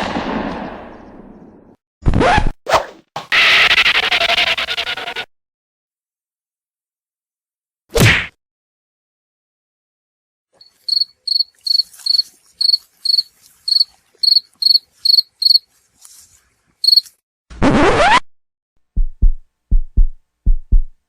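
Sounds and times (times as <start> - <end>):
cricket chirps: 10.6 - 15.7, 16.8 - 17.1.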